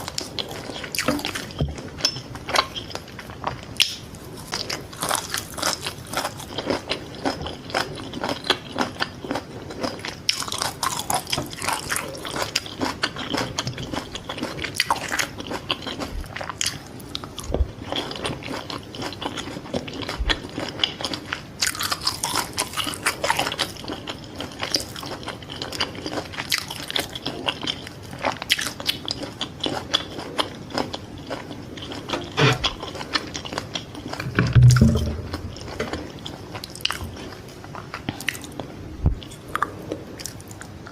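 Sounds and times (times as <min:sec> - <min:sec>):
biting and chewing: 0:00.0 - 0:40.9
loud low thump: 0:34.2 - 0:36.0.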